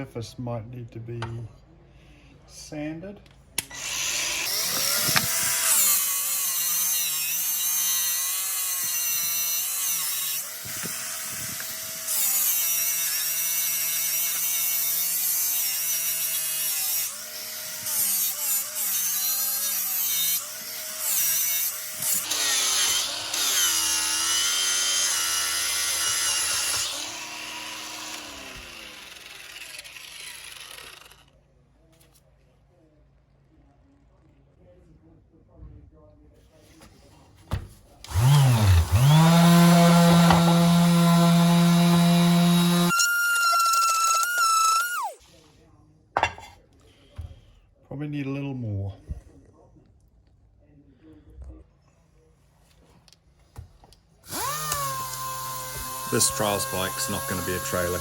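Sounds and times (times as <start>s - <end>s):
rotary tool whining on metal: 3.6s - 31.4s, 38.1s - 45.2s, 54.3s - 58.0s.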